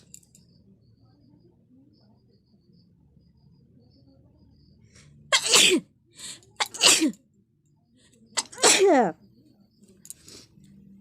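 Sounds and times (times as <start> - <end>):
woman sneezing: 5.3 - 5.8, 6.6 - 7.2, 8.4 - 9.1.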